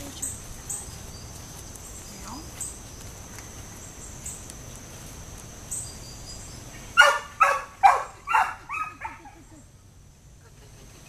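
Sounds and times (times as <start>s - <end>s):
dog barking: 7.0s - 9.4s.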